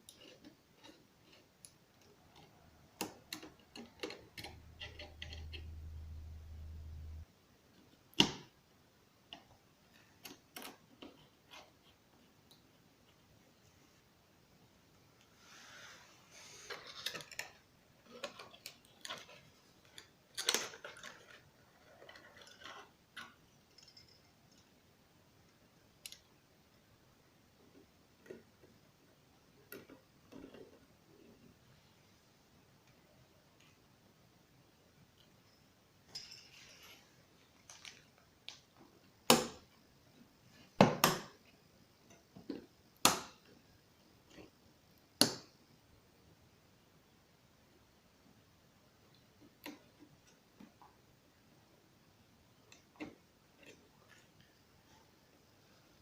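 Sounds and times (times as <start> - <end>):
computer parts clicking and rustling: 0.0 - 6.0.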